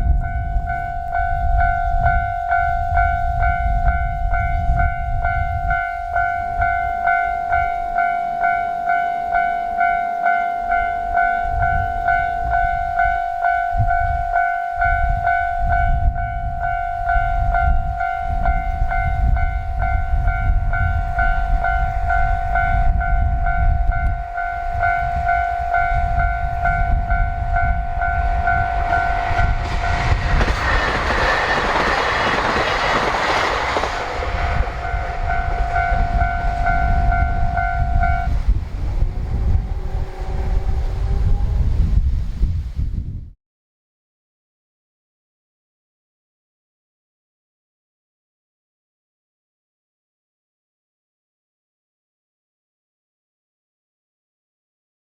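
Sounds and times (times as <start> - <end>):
level-crossing warning bell: 0.0 - 41.6
diesel train arriving: 0.0 - 41.9
low rumble: 15.0 - 43.3.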